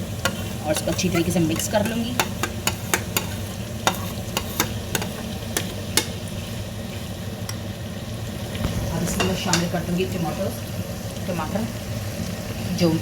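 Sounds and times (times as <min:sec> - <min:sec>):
food sizzling in pan: 0:00.0 - 0:13.0
spoon clicking against pan: 0:00.2 - 0:06.2.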